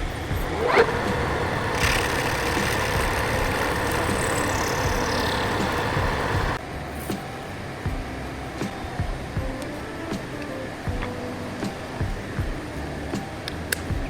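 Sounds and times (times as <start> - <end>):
workshop machine running: 0.0 - 6.6.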